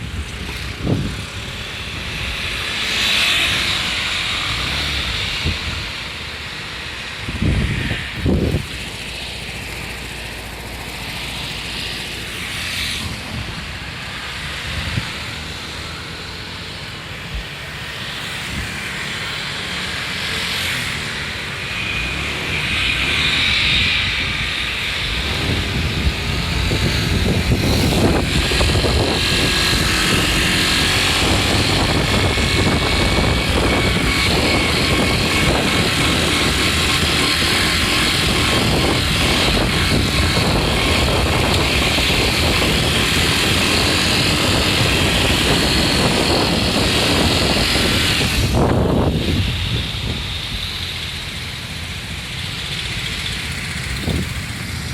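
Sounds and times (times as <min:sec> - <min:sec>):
abnormal howling noise: 0:00.0 - 0:54.9
scooter engine revving: 0:00.0 - 0:54.9.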